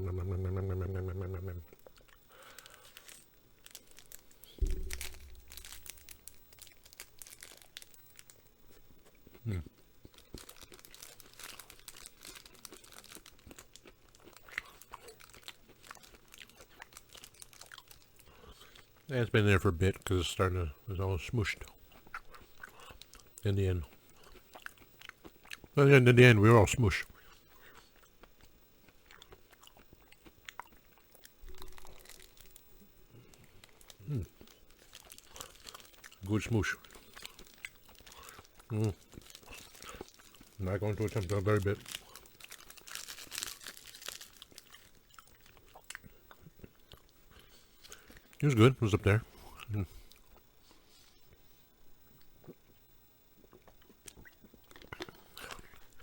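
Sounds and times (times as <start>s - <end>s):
wrapper crinkling: 2.3s - 8.4s, 10.1s - 18.3s, 31.4s - 32.6s, 33.3s - 46.0s
chewing with wet mouth sounds: 9.0s - 19.1s, 21.6s - 25.8s, 27.0s - 48.4s, 53.4s - 56.0s.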